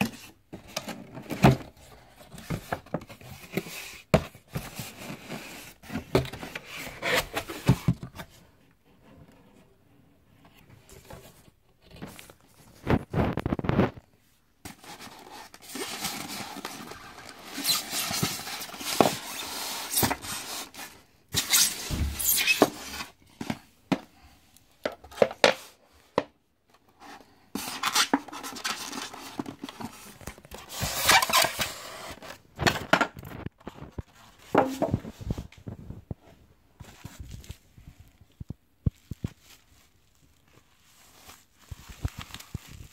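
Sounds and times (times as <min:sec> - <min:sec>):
packaging rustling and scraping: 0:00.0 - 0:09.7, 0:10.4 - 0:24.3, 0:26.7 - 0:42.9.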